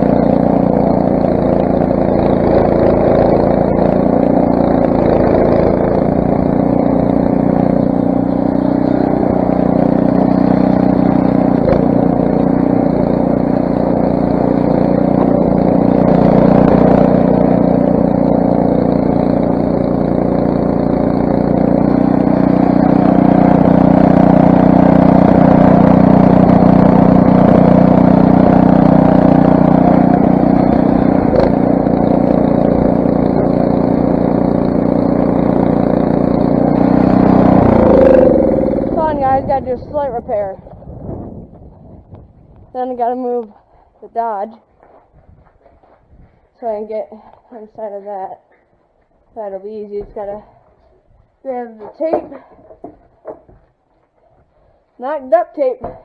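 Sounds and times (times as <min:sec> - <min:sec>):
snowblower engine running: 0:00.0 - 0:41.9.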